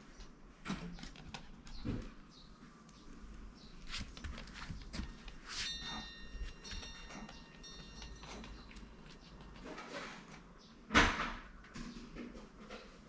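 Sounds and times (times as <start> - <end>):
faint scuffling: 3.6 - 9.6.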